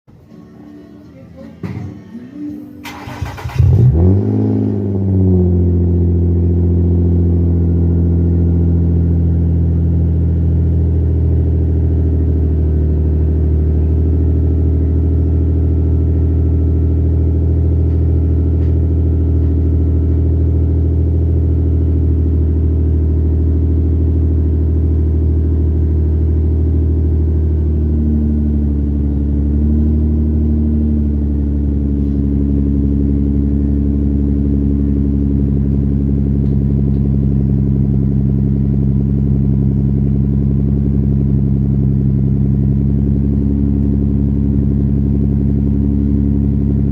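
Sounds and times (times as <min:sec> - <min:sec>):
car engine starting and idling: 0:00.1 - 0:46.9.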